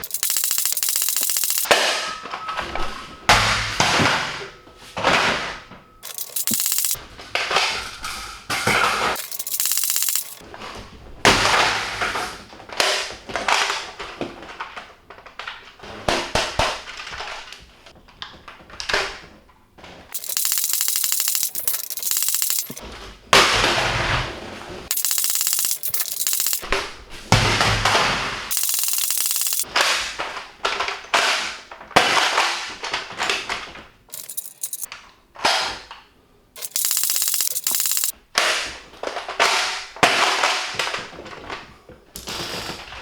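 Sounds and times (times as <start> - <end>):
toy blaster cocked and fired: 24.9 - 26.6, 28.5 - 29.7, 36.6 - 38.1.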